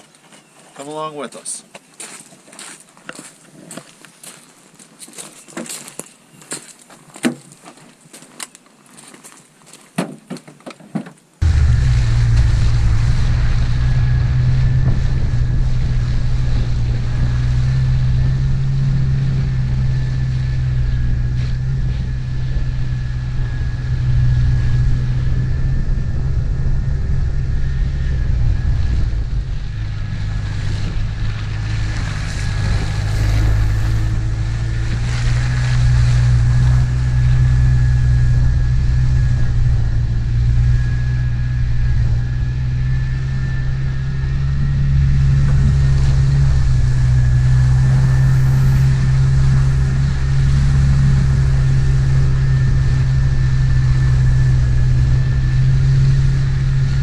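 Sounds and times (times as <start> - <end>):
engine and road noise rumble: 11.1 - 57.0
faint whine: 11.4 - 57.0.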